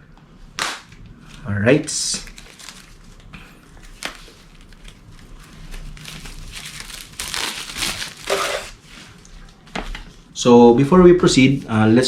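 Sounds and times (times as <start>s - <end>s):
paper packaging tearing: 2.1s - 8.8s.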